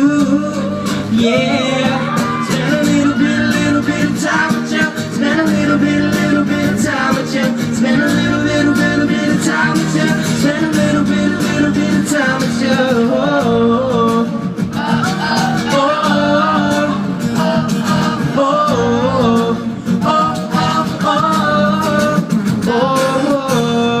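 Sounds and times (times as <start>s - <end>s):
live pop band with guitar: 0.0s - 24.0s
person singing: 0.0s - 24.0s.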